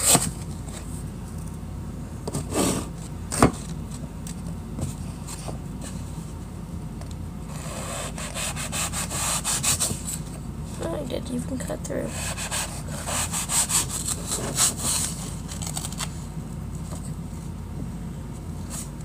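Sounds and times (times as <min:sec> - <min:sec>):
steady low hum: 0:00.0 - 0:19.0
knife rasping through foam: 0:07.5 - 0:09.9, 0:12.1 - 0:15.1.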